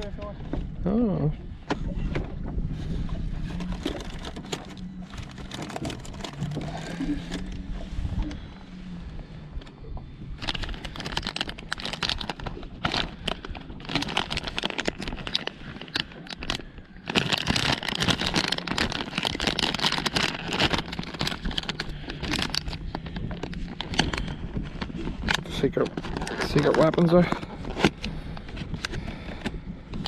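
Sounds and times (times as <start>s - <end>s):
plastic crinkling and clicking: 3.5s - 7.6s, 10.4s - 30.0s.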